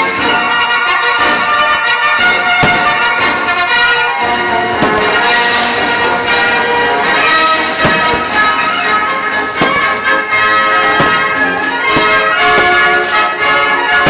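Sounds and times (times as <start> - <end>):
firework bursts: 0.0 - 14.0
orchestral music with brass and bells: 0.0 - 14.0.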